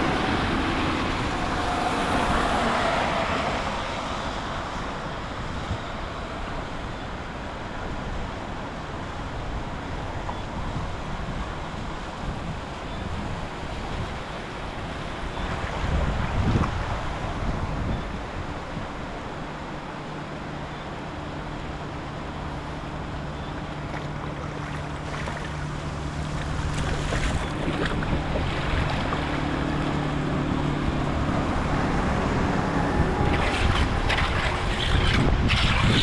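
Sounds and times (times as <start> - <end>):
wind buffeting microphone: 0.0 - 20.4, 21.1 - 36.0
rushing churning water: 0.0 - 36.0.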